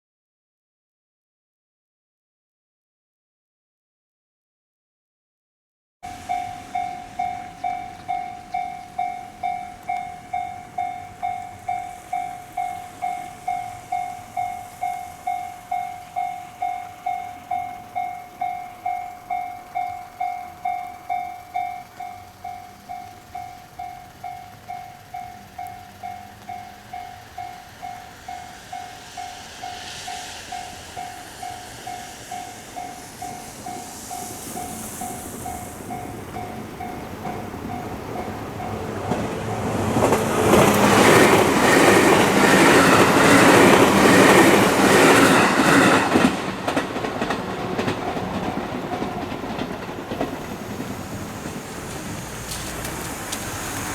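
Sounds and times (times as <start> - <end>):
level crossing warning bell: 6.0 - 53.9
train noise: 6.0 - 53.9.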